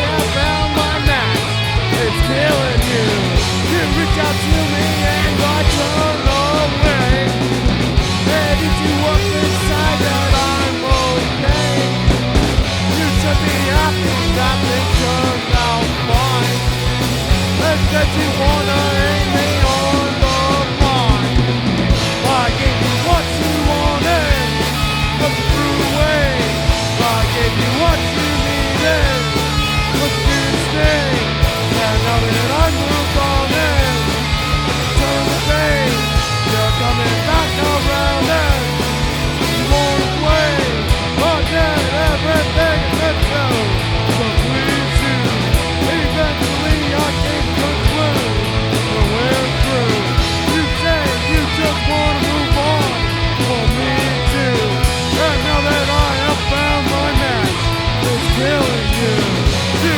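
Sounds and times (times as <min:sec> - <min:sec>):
lead guitar with bent notes: 0:00.0 - 0:59.9
punk rock band instrumental: 0:00.0 - 0:59.9.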